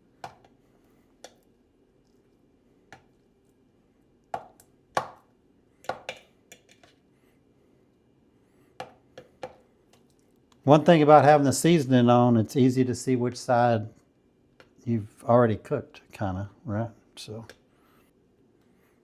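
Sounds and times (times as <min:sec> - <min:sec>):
utensil tapping plastic: 0:05.8 - 0:07.0.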